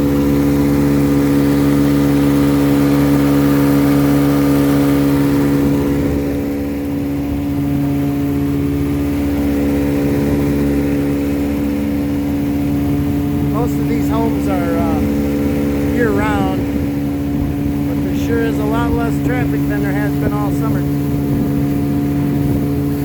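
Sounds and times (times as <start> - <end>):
outboard motor running: 0.0 - 23.0.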